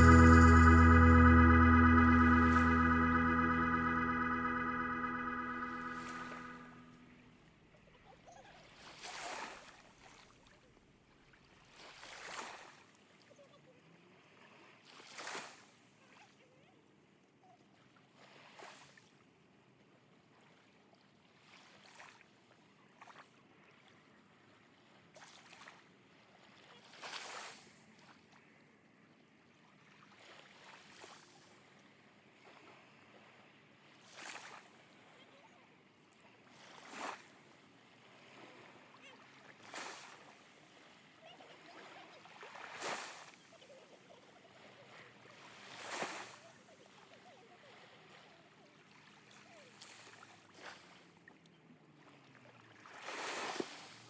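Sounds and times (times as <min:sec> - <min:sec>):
small waves lapping at shore: 0:52.0 - 0:54.0.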